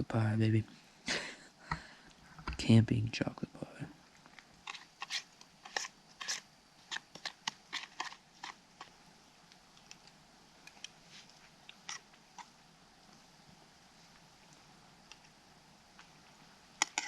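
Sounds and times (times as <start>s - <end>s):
faint crunching clicks of eating: 4.0s - 13.2s, 14.2s - 16.2s, 16.8s - 17.0s.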